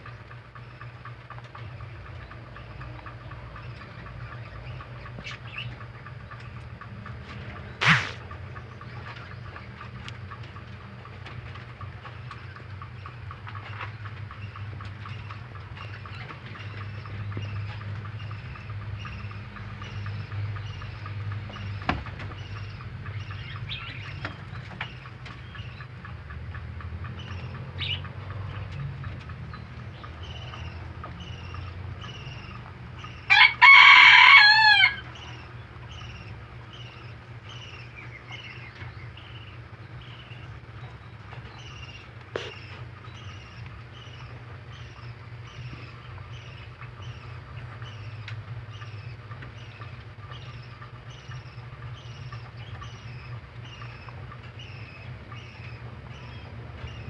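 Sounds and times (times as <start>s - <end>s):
small bird chirping: 0.0s - 33.4s, 35.0s - 57.0s
low steady hum: 0.0s - 57.0s
rooster crowing: 33.3s - 35.1s.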